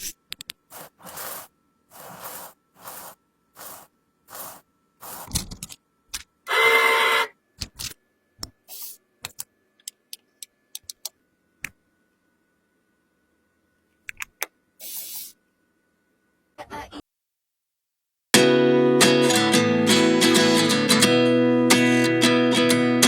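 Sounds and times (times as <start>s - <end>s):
short scraping strokes: 0.7s - 5.3s.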